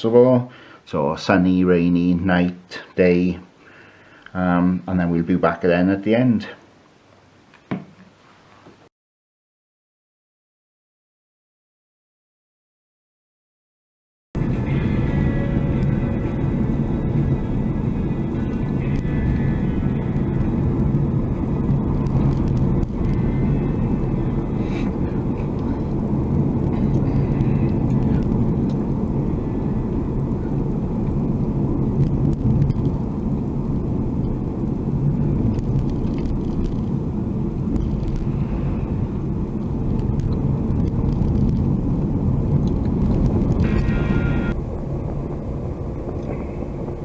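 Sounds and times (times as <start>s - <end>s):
car cabin road rumble: 14.4s - 47.0s
short high-pitched tone: 43.6s - 44.6s.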